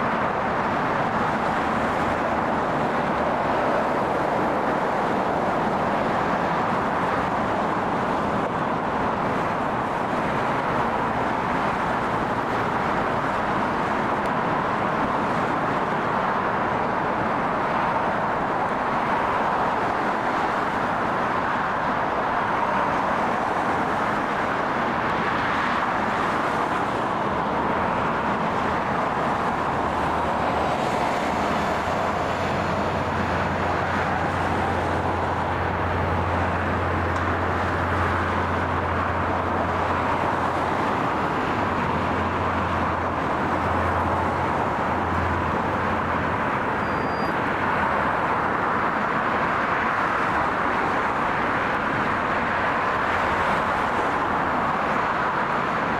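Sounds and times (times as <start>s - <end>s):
aircraft engine noise: 21.4s - 48.3s.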